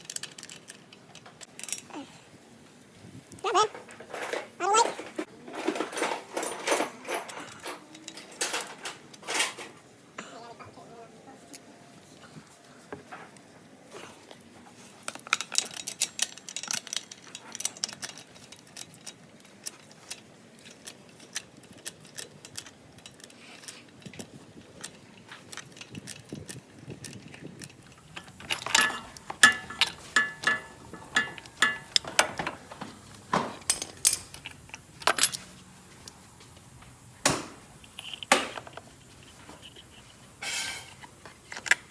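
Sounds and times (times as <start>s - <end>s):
metal tools clinking: 3.4s - 9.8s, 27.2s - 41.9s.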